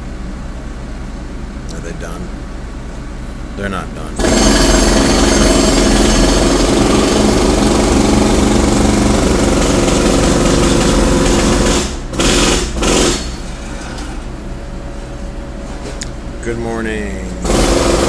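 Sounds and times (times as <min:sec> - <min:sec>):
jackhammer hammering: 0:04.2 - 0:13.4, 0:17.4 - 0:18.0.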